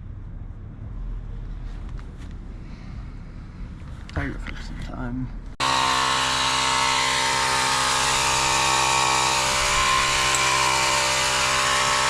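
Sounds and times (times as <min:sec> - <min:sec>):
motor running steadily: 0:05.6 - 0:12.0.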